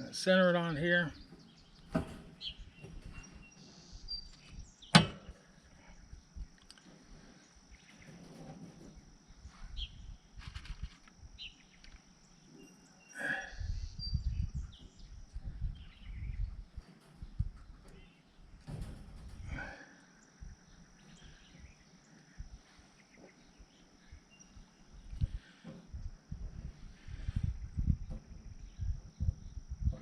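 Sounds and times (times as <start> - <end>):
steady high whine: 0.0 - 30.0
faint bird chirps: 0.9 - 8.5, 9.2 - 18.5, 19.2 - 26.0, 26.7 - 30.0
wire-mesh panels clicking and rattling: 16.8 - 19.4.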